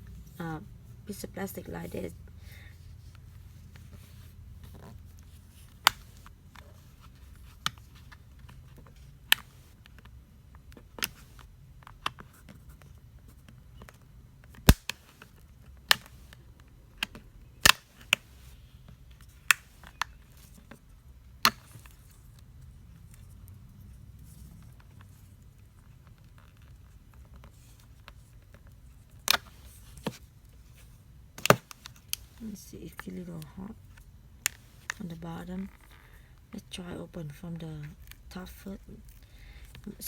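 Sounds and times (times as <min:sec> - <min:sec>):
sharp plastic clicks and snaps: 0:14.6 - 0:16.1, 0:17.0 - 0:18.2.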